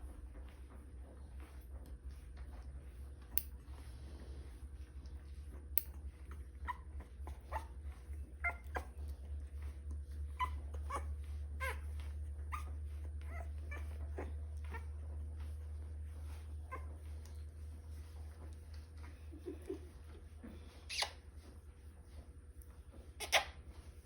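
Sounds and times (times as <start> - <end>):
puppy whimpering: 6.4 - 15.6, 16.2 - 17.4, 23.2 - 23.7.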